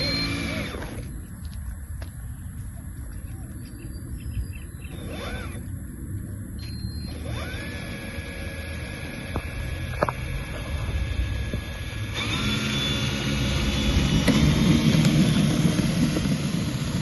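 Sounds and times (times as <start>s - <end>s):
model plane motor whining: 0.0s - 1.2s, 4.8s - 5.8s, 6.6s - 17.0s.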